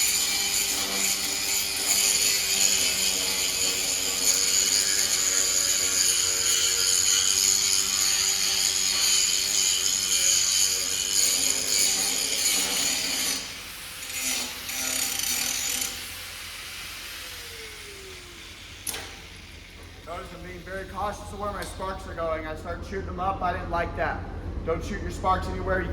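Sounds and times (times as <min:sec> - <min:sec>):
grinder winding down: 0:00.0 - 0:20.9
angle grinder grinding metal: 0:00.0 - 0:21.8.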